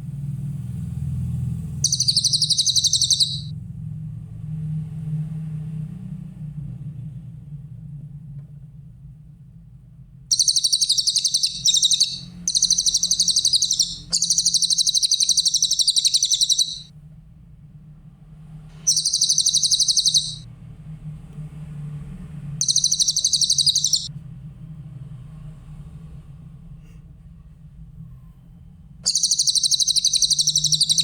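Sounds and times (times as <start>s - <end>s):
bird trilling: 1.8s - 3.5s, 10.3s - 16.9s, 18.8s - 20.4s, 22.6s - 24.1s, 29.1s - 31.0s
steady low hum: 10.3s - 16.9s.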